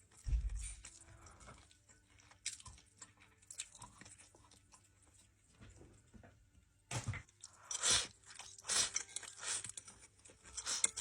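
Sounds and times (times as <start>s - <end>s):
crunchy chewing: 0.0s - 5.4s.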